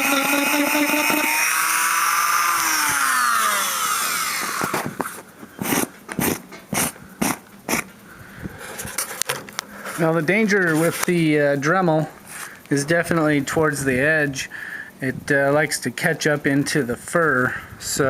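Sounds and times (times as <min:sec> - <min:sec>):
rotary tool whine: 0:00.0 - 0:09.2.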